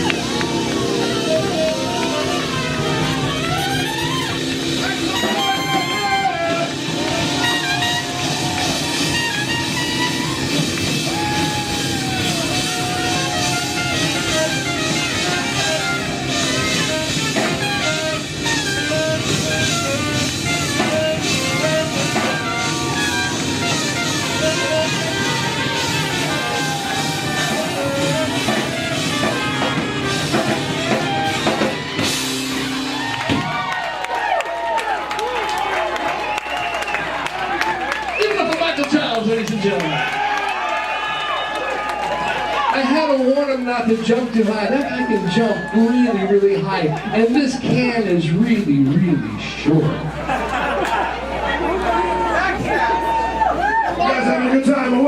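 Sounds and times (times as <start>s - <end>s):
lead line of bending notes: 0.0s - 33.2s
electric guitar: 0.0s - 38.2s
live soul band playing: 0.0s - 55.0s.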